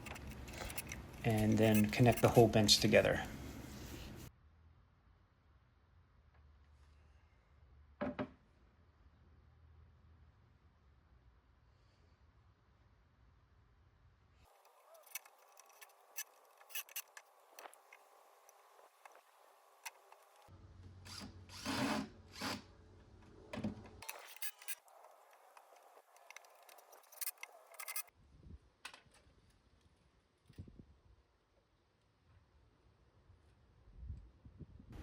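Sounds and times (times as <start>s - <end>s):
clicks and knocks of wood and tools: 0.0s - 2.6s, 14.5s - 20.5s, 23.2s - 28.1s
drill driving screws into wood: 21.0s - 22.7s.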